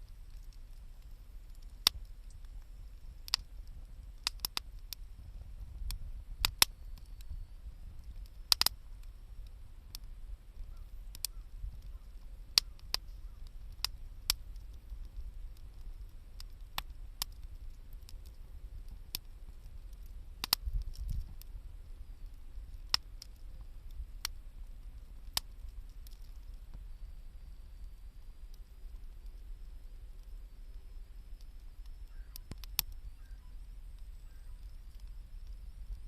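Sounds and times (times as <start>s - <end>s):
low steady rumble: 0.0s - 36.0s
wood fire crackling: 0.0s - 36.0s
sharp pops: 8.5s - 8.8s.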